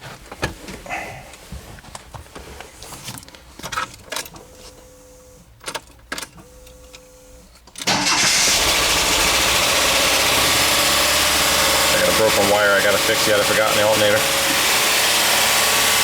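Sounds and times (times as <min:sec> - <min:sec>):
engine starting and running: 0:07.8 - 0:16.0.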